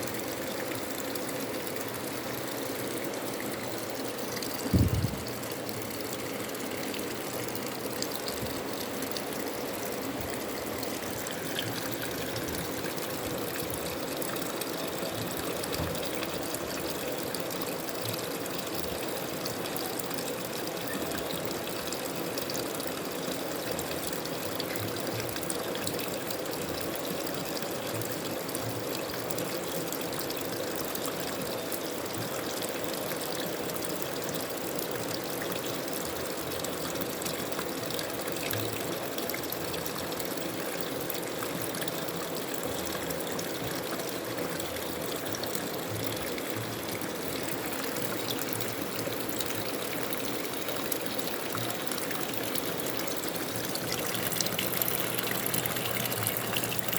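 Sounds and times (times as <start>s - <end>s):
washing machine knock: 4.7s - 5.4s
washing machine running: 53.1s - 56.9s.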